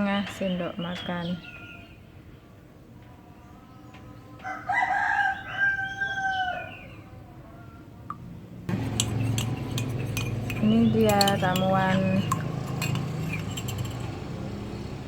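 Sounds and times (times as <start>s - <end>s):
rooster crowing: 4.4s - 7.7s
spoon clinking against glass: 8.7s - 14.3s.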